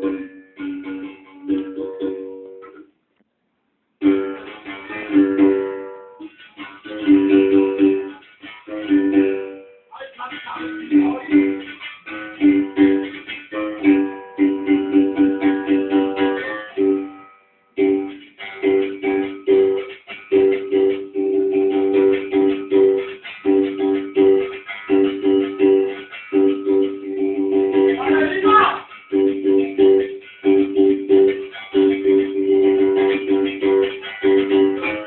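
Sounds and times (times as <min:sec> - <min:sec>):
musical bow struck rhythmically: 0:17.8 - 0:35.0.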